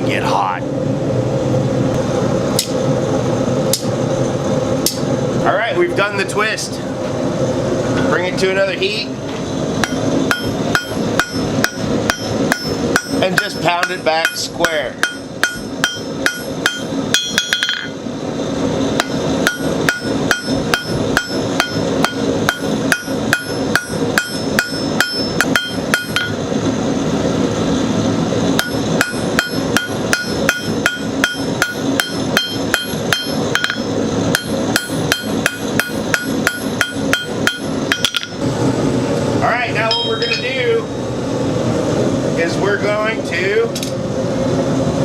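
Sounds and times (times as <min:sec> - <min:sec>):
hammer striking steel on anvil: 0:09.8 - 0:18.0, 0:19.0 - 0:26.4, 0:28.6 - 0:38.4, 0:39.8 - 0:40.6.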